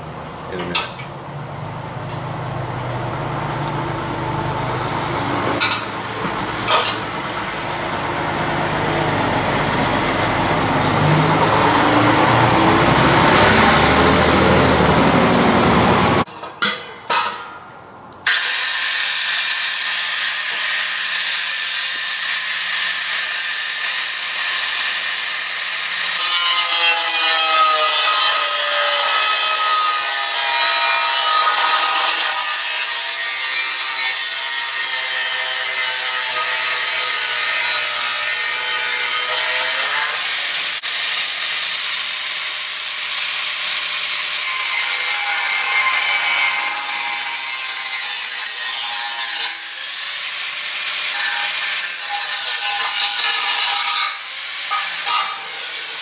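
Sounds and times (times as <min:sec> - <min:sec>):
power tool cutting steel keg: 0:18.3 - 0:56.0.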